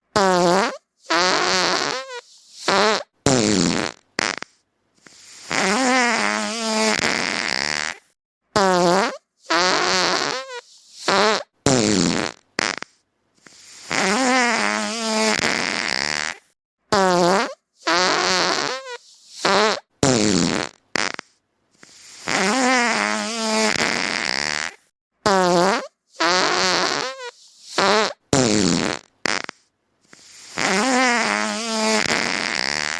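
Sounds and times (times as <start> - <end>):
farting sounds: 0.1 - 32.9.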